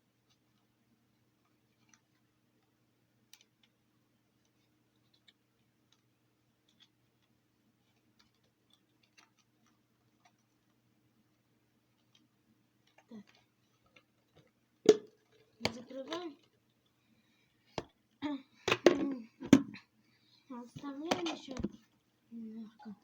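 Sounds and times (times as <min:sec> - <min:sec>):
faint steady hum: 0:00.0 - 0:23.0
plastic parts clicking: 0:04.4 - 0:10.8.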